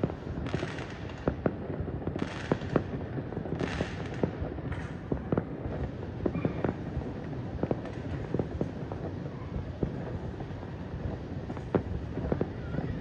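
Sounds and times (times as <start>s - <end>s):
distant fireworks popping and banging: 0.0s - 13.0s.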